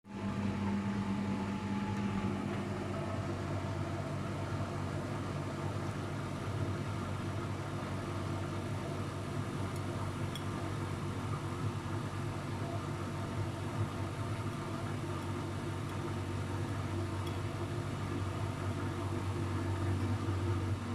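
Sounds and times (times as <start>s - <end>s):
washing machine spinning: 0.1s - 20.9s.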